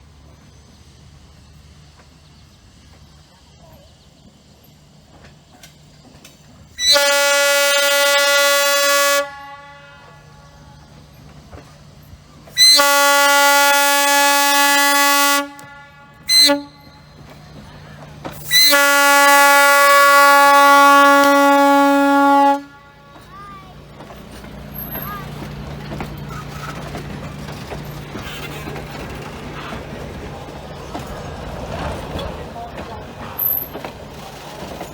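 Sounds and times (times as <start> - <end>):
steam locomotive whistle blasts: 6.8 - 10.9, 12.5 - 17.3, 18.4 - 23.2.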